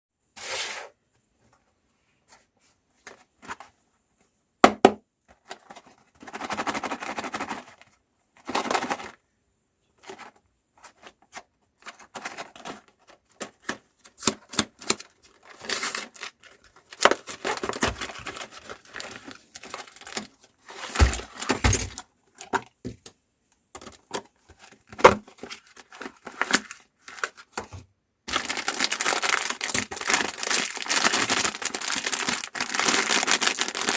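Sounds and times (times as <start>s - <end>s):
plastic packaging crinkling and tearing: 11.8s - 22.0s, 25.2s - 27.6s, 28.3s - 33.9s.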